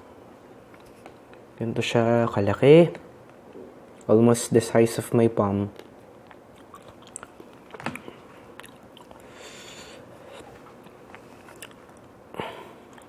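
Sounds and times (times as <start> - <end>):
eating crackles and clicks: 5.7 - 9.4, 10.4 - 12.2
food crunch: 10.7 - 12.2.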